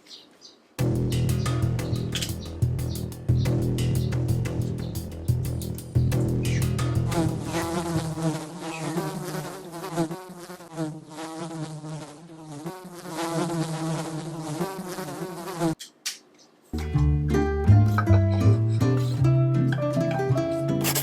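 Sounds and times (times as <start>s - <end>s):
flying insect buzzing: 4.4s - 15.8s.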